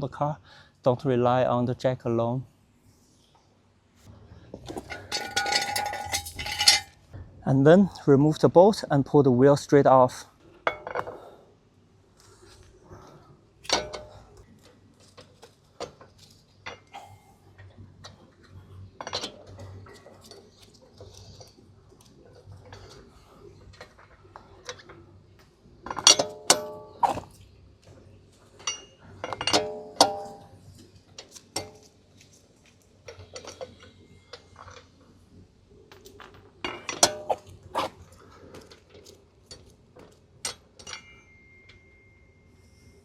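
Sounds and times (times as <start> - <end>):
wheel bolts and wrench clinking: 4.6 - 7.1, 10.6 - 11.3, 13.6 - 14.4, 19.0 - 23.1, 23.7 - 27.4, 28.5 - 32.0, 35.9 - 42.6.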